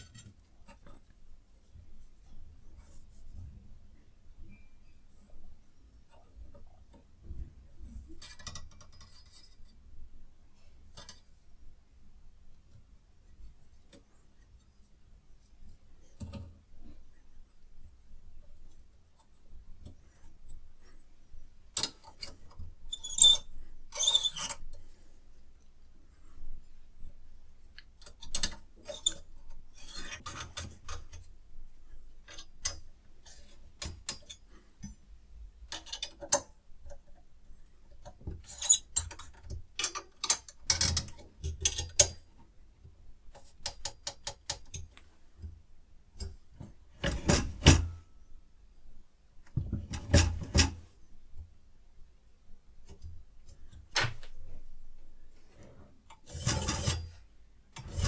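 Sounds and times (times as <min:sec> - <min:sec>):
clicks and clatter of parts: 0:08.0 - 0:09.8, 0:27.8 - 0:31.3, 0:35.7 - 0:37.2, 0:37.9 - 0:42.3
rubbing and scraping: 0:55.4 - 0:58.0.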